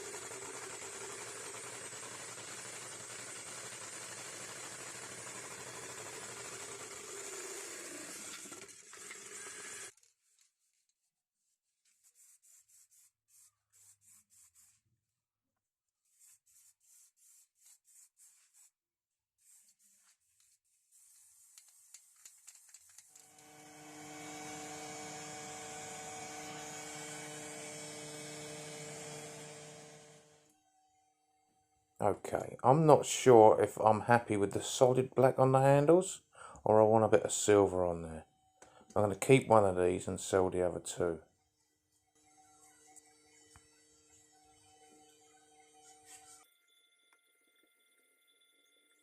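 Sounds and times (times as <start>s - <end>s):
paint shaker running: 0.0s - 9.9s, 19.4s - 30.0s.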